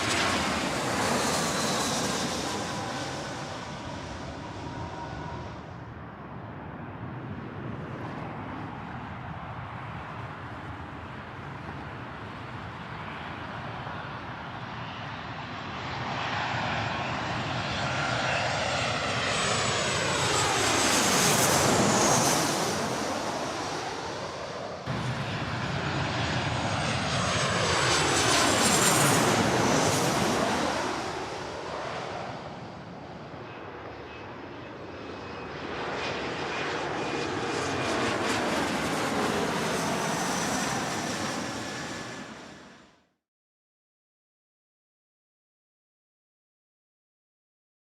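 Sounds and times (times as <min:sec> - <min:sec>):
jet airliners flying overhead: 0:00.0 - 0:43.2
high engine whine: 0:17.2 - 0:33.7.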